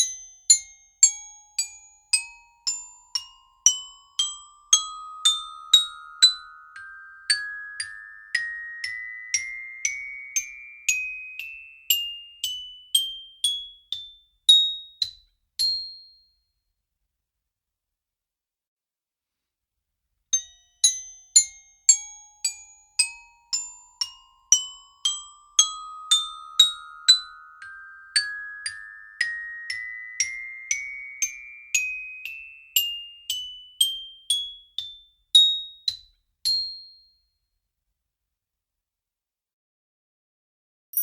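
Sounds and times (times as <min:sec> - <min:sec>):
xylophone notes climbing in pitch: 0:03.7 - 0:13.0, 0:23.4 - 0:34.9.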